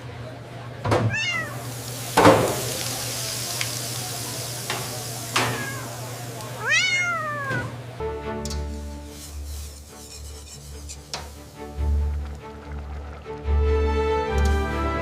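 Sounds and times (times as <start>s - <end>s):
cat meowing: 1.1s - 1.7s, 5.4s - 6.0s, 6.6s - 7.8s
steady hiss: 1.3s - 7.5s, 8.6s - 11.8s.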